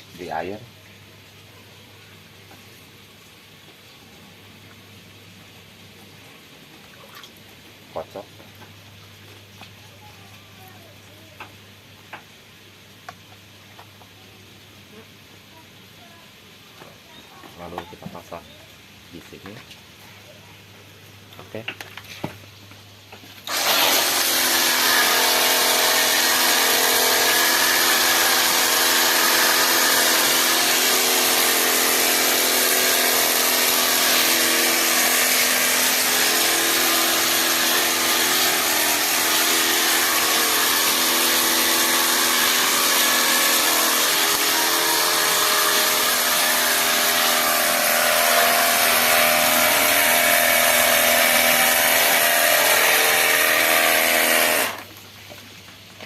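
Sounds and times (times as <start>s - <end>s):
pressure washer motor hum: 23.4s - 54.9s.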